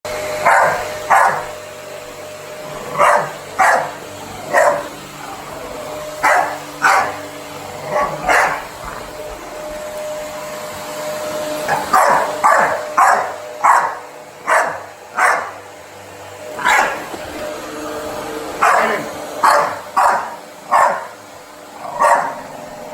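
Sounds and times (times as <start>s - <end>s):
vacuum cleaner humming: 0.0s - 22.9s
dog barking: 0.4s - 1.6s, 2.9s - 5.4s, 6.2s - 8.8s, 11.7s - 15.6s, 16.6s - 17.1s, 18.6s - 21.2s, 21.8s - 22.5s.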